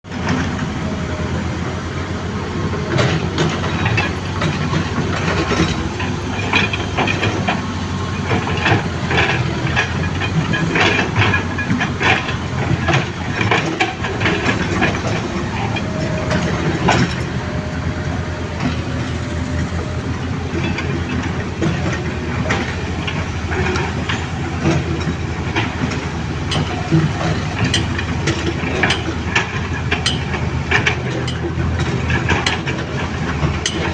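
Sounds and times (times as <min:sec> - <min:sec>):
excavator engine rumble: 0:00.0 - 0:33.9
metallic knocks and clanks: 0:02.8 - 0:33.9.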